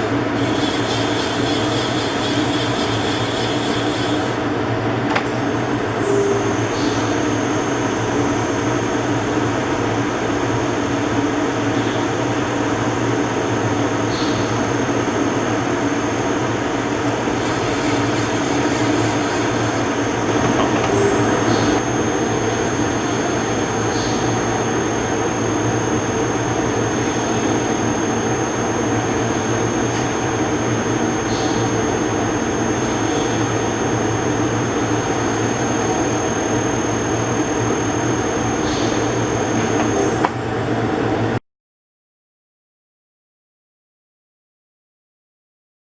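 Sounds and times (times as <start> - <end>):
lathe hum and rumble: 0.0 - 41.4
high-pitched whine: 6.0 - 40.3.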